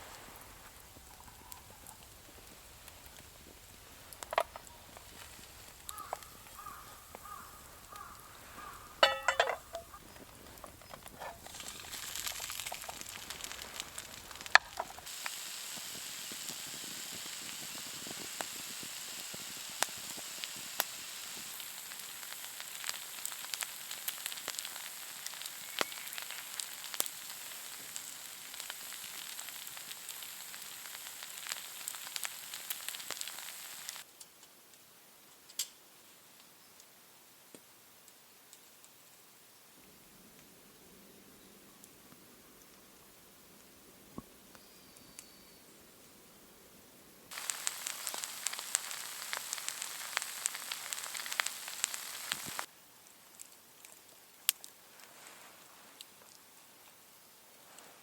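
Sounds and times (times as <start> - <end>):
food sizzling in a pan: 0.0 - 34.1, 47.3 - 52.7.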